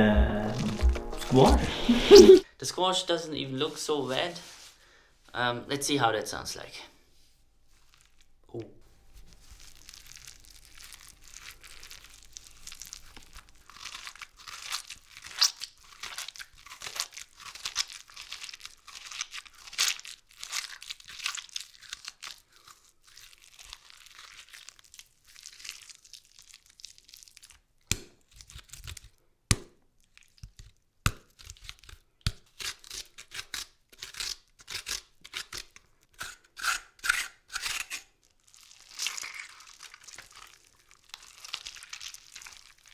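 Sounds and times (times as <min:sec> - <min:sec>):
squash crunching and tearing: 0:09.3 - 0:42.9.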